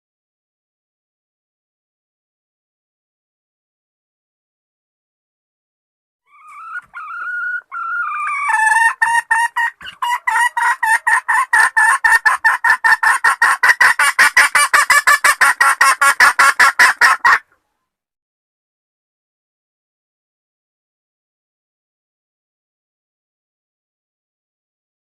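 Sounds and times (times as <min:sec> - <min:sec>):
hen calling and clucking: 0:06.3 - 0:17.9.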